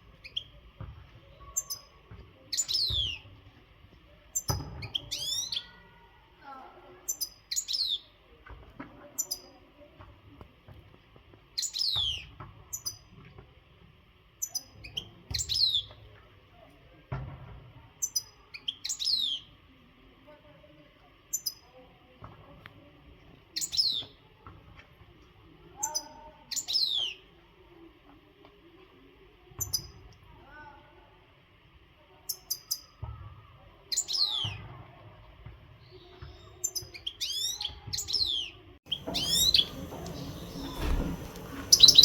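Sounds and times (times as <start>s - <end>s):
goldfinch singing: 36.7s - 42.0s.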